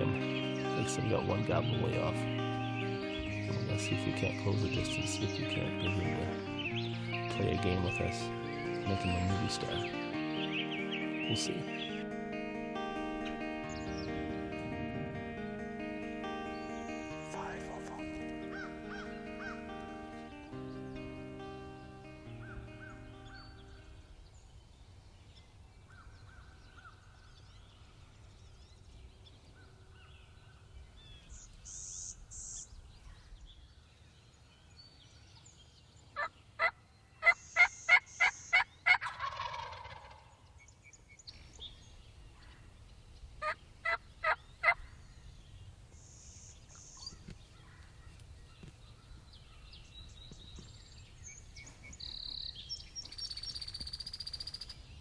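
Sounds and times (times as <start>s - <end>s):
faint high bird chirps: 16.3s - 55.0s
turkey gobble: 36.6s - 40.3s, 43.4s - 44.8s
turkey yelps: 36.6s - 40.3s, 43.4s - 44.8s.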